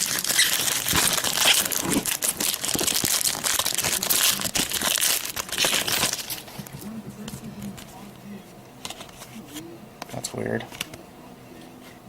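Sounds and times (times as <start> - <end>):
foil wrapper crinkling: 0.0 - 8.0.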